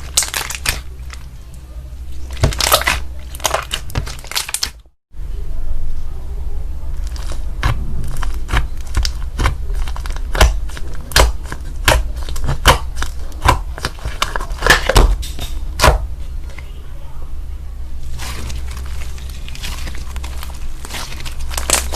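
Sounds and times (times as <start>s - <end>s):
slime popping wetly: 0.0s - 1.2s, 2.3s - 4.8s, 7.1s - 15.2s.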